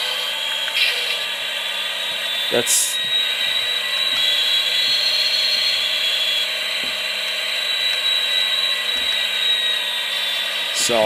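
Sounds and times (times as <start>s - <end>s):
diesel engine sound through speaker: 2.5s - 3.2s, 10.7s - 11.0s.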